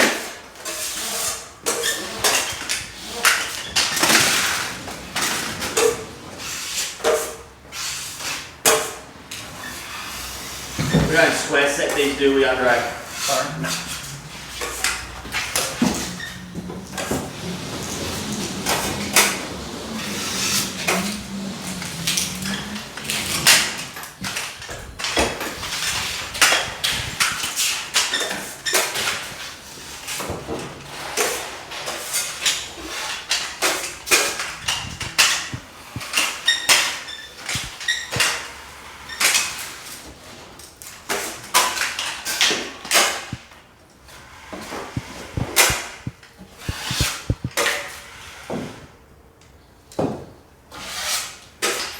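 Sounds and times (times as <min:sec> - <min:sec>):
plastering tools knocking and scraping: 0:13.0 - 0:29.5, 0:30.1 - 0:38.5, 0:44.9 - 0:47.8.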